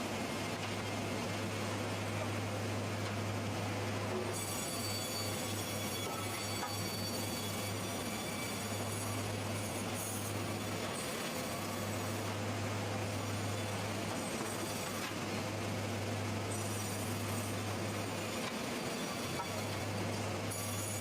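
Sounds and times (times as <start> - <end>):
sawmill machinery running: 0.1 - 21.0.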